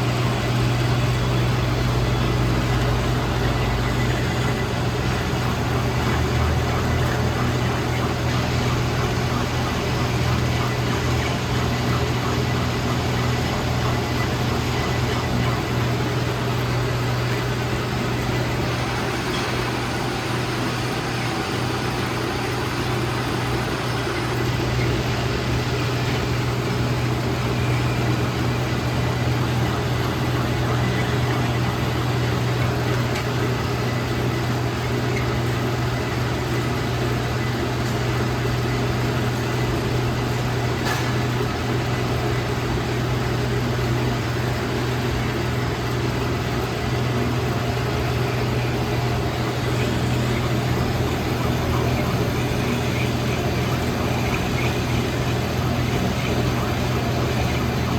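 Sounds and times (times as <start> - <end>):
metal lathe humming: 0.0 - 34.3, 44.9 - 57.9.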